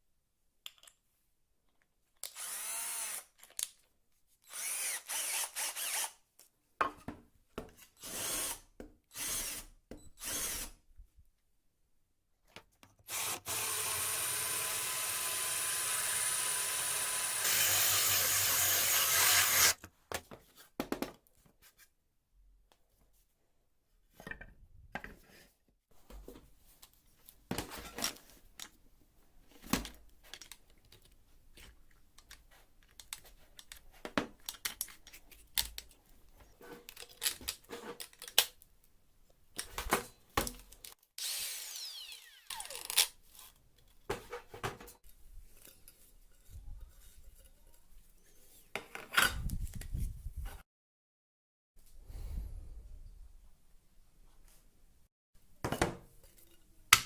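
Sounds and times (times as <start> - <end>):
power tool running: 13.1 - 19.8, 41.2 - 43.0.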